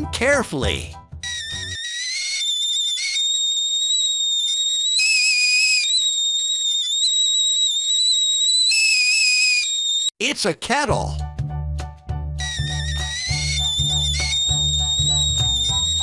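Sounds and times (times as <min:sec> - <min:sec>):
kettle whistling: 0:01.2 - 0:10.1, 0:12.4 - 0:16.0.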